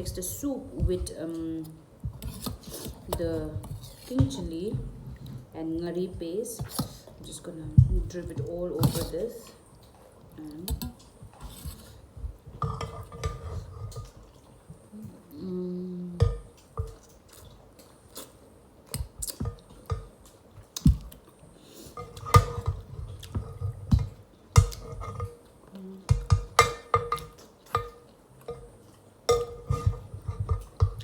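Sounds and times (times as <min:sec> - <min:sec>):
chewing: 0:16.5 - 0:25.9.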